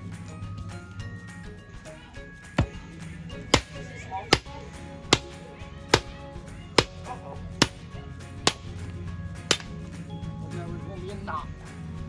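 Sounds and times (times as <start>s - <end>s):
background music: 0.0s - 12.0s
axe chopping firewood: 2.6s - 10.0s.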